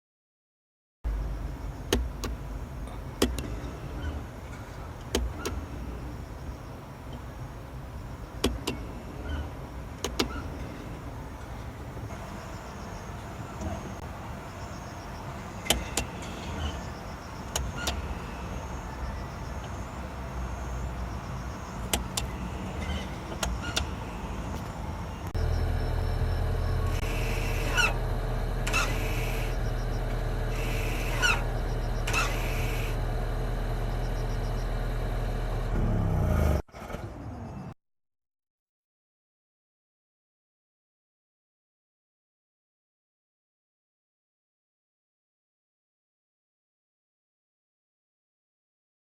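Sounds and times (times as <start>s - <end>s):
parking brake motor whirring: 1.1s - 36.6s
steady hum: 1.1s - 36.6s
brake squeak: 1.7s - 7.3s, 8.2s - 14.0s, 15.4s - 20.8s, 21.4s - 37.0s.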